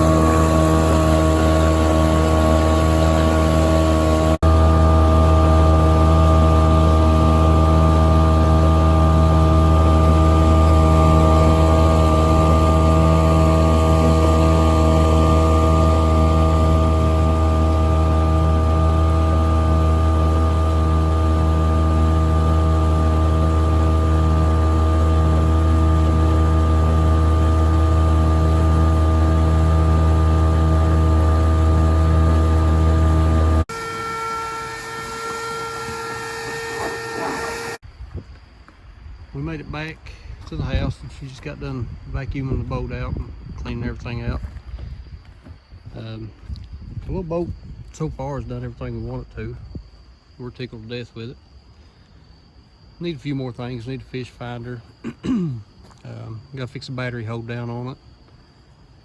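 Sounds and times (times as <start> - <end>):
outboard motor running: 0.0 - 37.8.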